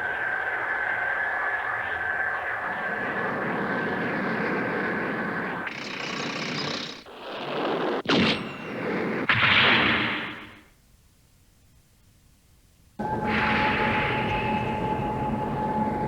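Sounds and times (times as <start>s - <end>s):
noisy rumble: 0.0s - 6.5s, 13.0s - 16.0s
blasts: 0.0s - 10.7s, 13.0s - 16.0s
faint held tone: 13.0s - 16.0s.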